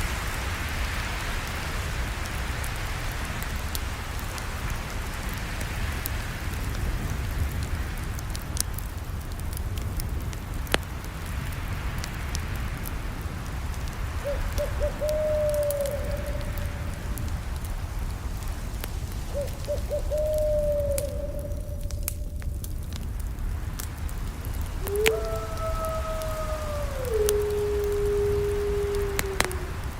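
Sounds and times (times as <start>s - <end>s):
campfire crackling: 0.0s - 29.9s
bird calling: 14.2s - 16.9s, 19.3s - 22.4s, 24.8s - 29.9s.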